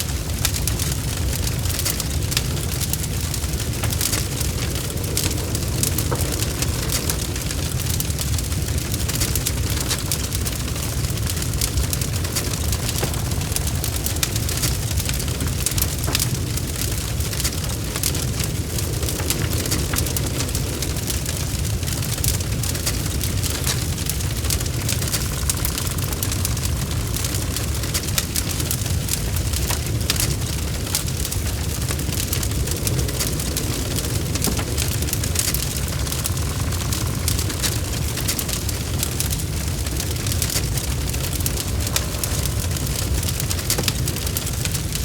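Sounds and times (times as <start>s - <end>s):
wood fire crackling: 0.0s - 45.0s.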